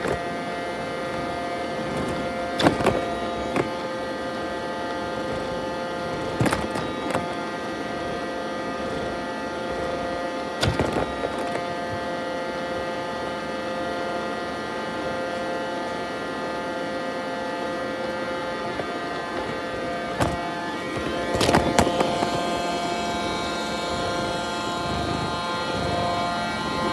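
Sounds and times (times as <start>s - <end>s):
robot vacuum whining hum: 0.0s - 26.9s.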